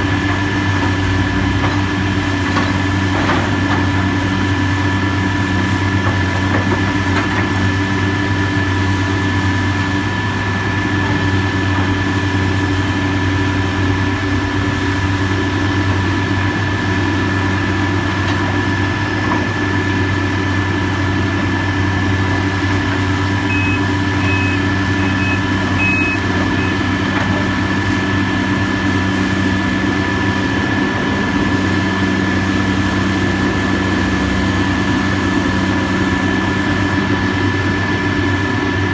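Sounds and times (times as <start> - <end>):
diesel engine running: 0.0 - 38.9
high beeps: 23.5 - 26.8.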